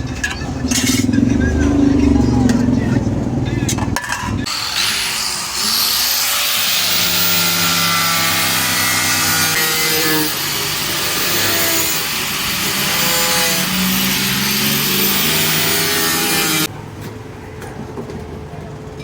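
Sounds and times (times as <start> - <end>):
power tool grinding sheet metal: 4.4 - 16.7.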